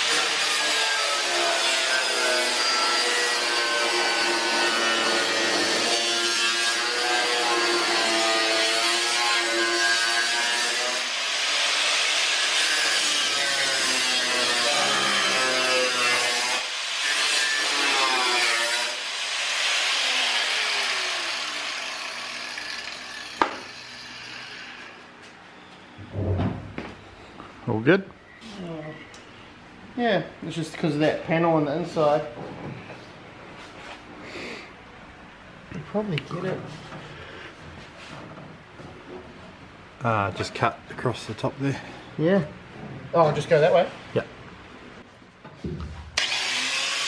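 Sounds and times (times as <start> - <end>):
angle grinder cutting sheet metal: 0.0 - 25.0, 46.2 - 47.0.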